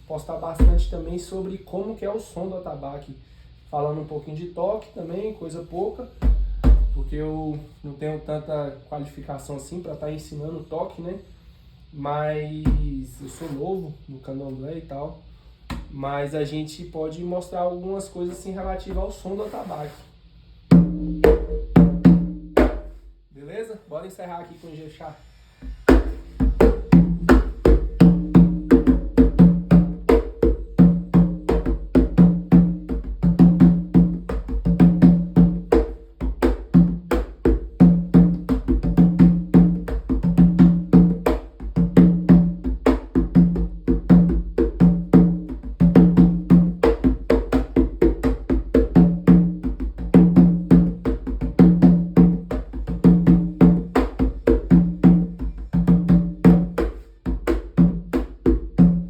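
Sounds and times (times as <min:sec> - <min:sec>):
hand drum rhythm: 0:00.6 - 0:01.2, 0:06.2 - 0:07.4, 0:20.7 - 0:23.1, 0:25.7 - 0:59.0.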